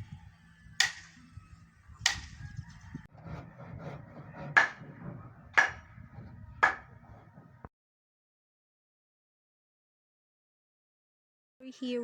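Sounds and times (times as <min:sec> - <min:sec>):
hammer striking wood: 0:00.8 - 0:01.1, 0:02.0 - 0:02.4, 0:03.2 - 0:06.0, 0:06.6 - 0:07.5.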